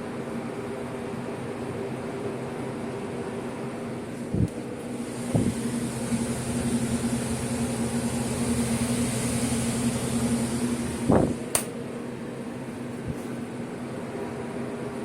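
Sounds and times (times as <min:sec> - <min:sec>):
electric motor hum: 0:04.8 - 0:11.7
motor switching thump: 0:05.3 - 0:05.6, 0:10.9 - 0:11.8
sharp click: 0:11.5 - 0:11.8.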